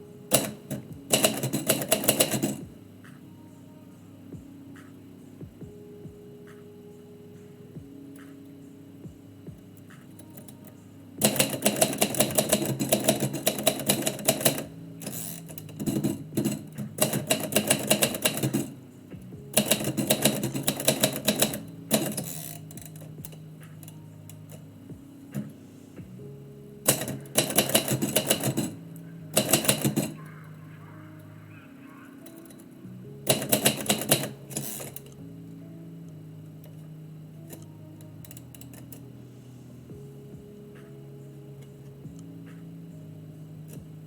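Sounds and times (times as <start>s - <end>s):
typewriter keys clacking: 0.3s - 2.7s, 9.9s - 25.6s, 26.9s - 30.6s, 32.0s - 35.2s.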